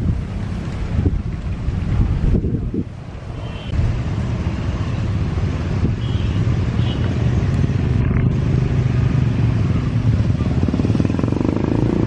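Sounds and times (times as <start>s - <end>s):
wind buffeting microphone: 0.0s - 4.0s.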